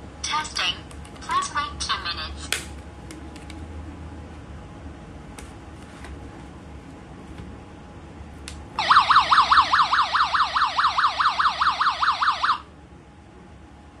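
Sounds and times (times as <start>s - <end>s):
alarm siren warbling: 8.8s - 12.6s.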